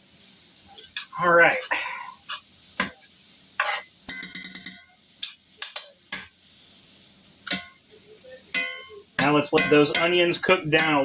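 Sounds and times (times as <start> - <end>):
onions sizzling in oil: 0.0 - 11.0
rapid rattle with ringing tones: 8.5 - 11.0.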